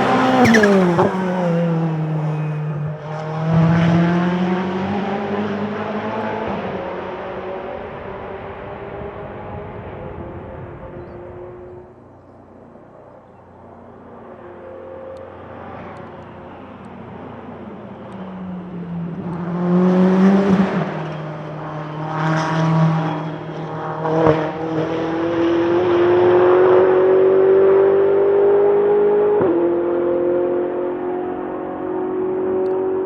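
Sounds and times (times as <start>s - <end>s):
race car engine accelerating: 0.0s - 9.7s
sharp gearshifts: 0.1s - 1.6s.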